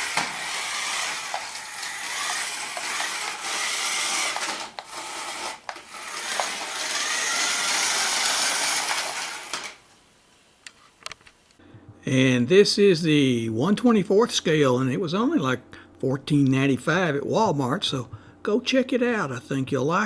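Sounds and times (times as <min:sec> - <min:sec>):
toy truck motor whirring: 0:00.0 - 0:09.9.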